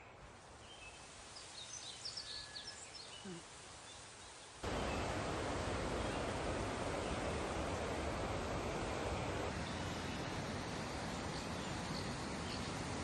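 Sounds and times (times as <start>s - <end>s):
small birds chirping: 0.6s - 13.0s
waterfall rushing: 4.6s - 13.0s.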